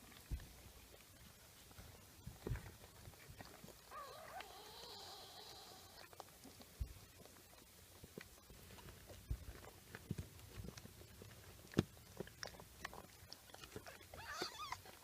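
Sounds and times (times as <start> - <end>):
cat chewing with wet crunching: 0.0 - 15.0
cat mewing: 14.2 - 14.8.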